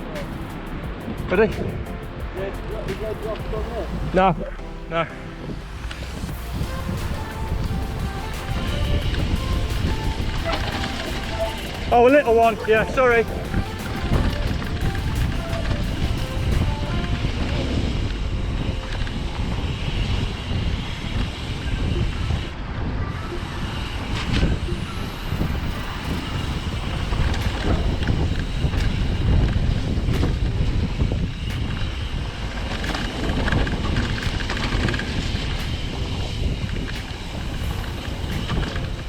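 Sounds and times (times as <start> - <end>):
bike tyre rumble: 0.0 - 39.0
wind buffeting microphone: 0.0 - 39.0.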